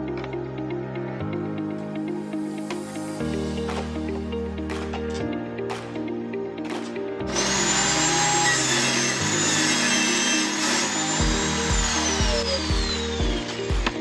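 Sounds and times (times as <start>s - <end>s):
music with steady beat: 2.6s - 9.5s, 10.6s - 14.0s
power tool whining on board: 7.3s - 14.0s.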